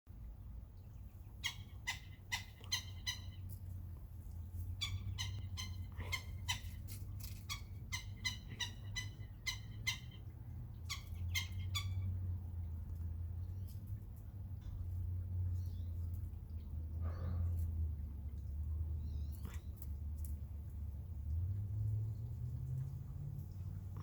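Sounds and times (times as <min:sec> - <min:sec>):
woodpecker calling: 0:01.4 - 0:03.5, 0:04.8 - 0:12.1.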